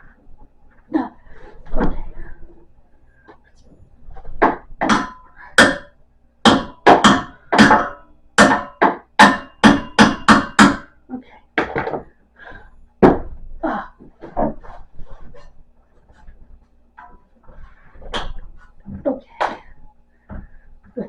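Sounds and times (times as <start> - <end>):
metal being hammered: 4.5 - 11.0.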